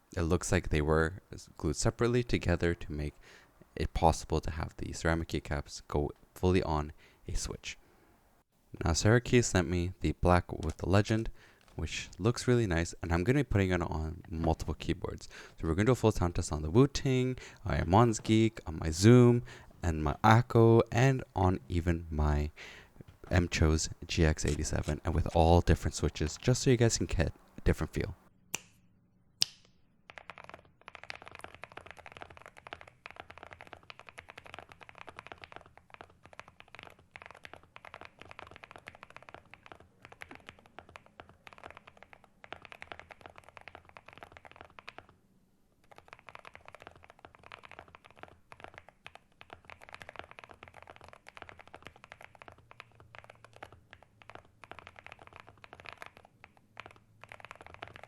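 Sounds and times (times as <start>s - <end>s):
mechanical keyboard typing: 10.2s - 13.0s, 23.1s - 28.1s, 30.1s - 45.2s, 45.8s - 58.0s.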